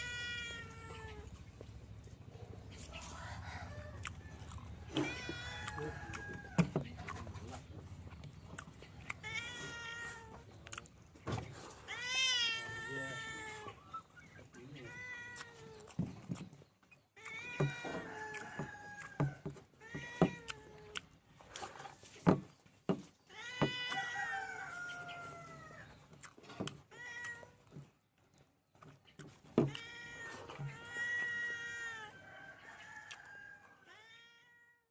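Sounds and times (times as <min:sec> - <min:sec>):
cat meowing: 0:00.0 - 0:01.4, 0:04.9 - 0:06.6, 0:09.1 - 0:10.5, 0:11.8 - 0:13.9, 0:14.6 - 0:15.9, 0:17.2 - 0:18.3, 0:19.8 - 0:20.9, 0:23.3 - 0:25.8, 0:26.8 - 0:27.7, 0:29.6 - 0:32.2, 0:33.8 - 0:34.9.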